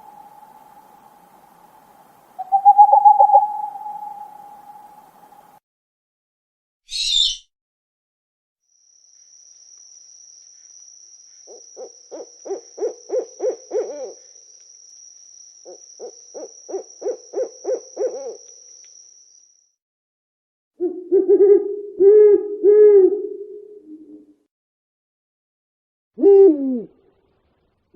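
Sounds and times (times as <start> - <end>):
thin high tone: 0.0 - 5.5
owl hooting: 0.0 - 5.6, 6.9 - 7.4, 11.5 - 14.3, 15.6 - 18.5, 20.8 - 24.1.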